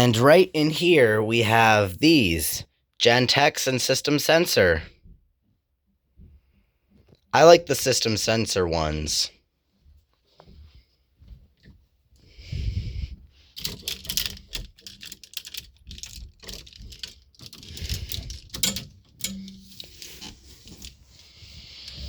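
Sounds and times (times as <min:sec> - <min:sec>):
handling rustling: 0:13.5 - 0:22.0.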